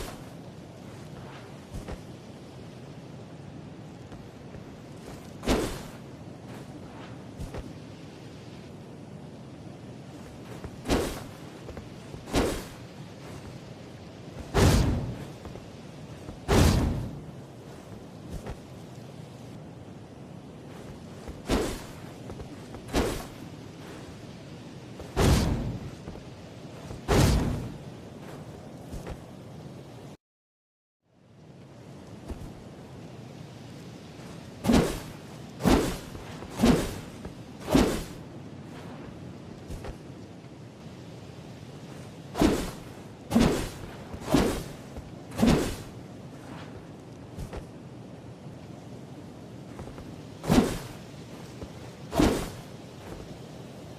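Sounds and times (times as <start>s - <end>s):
sword swishes: 5.0s - 7.7s, 10.3s - 11.5s, 12.2s - 13.6s, 14.4s - 15.6s, 16.3s - 17.2s, 21.1s - 24.0s, 25.0s - 25.9s, 26.9s - 29.2s, 34.6s - 38.2s, 42.4s - 46.8s, 49.8s - 53.2s.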